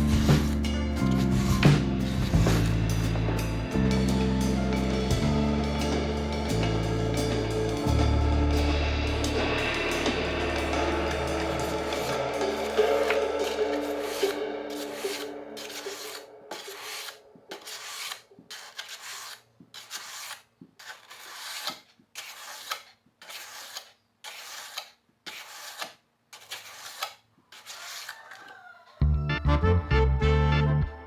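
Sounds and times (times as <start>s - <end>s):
knife scraping on sharpener: 0.0s - 3.2s, 10.0s - 28.5s
background music: 0.0s - 17.9s, 29.0s - 31.0s.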